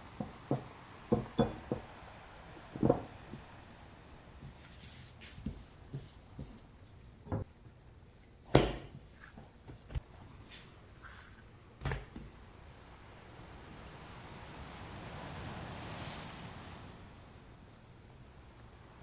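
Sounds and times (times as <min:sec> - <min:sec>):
kitchen knocks and thumps: 0:00.2 - 0:01.9, 0:02.7 - 0:03.5, 0:07.2 - 0:07.5, 0:08.5 - 0:09.1.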